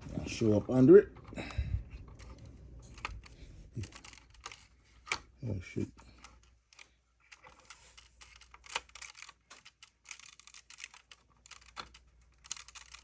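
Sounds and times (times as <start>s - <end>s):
plastic pieces clicking and rattling: 2.0s - 5.2s, 6.1s - 13.0s.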